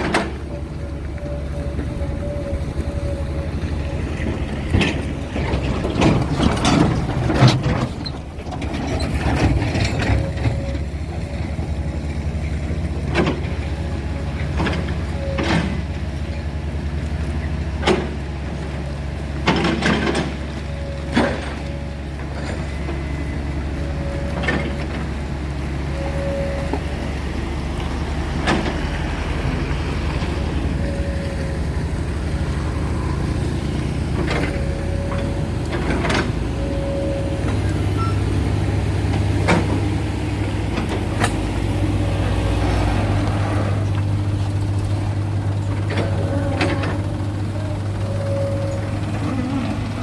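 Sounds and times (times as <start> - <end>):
heavy diesel engine running: 0.0 - 50.0
clanks and knocks: 4.2 - 10.7.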